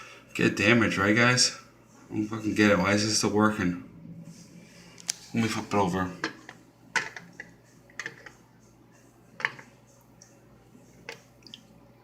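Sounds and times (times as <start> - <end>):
fidget spinner clicks and taps in water: 11.0 - 11.7.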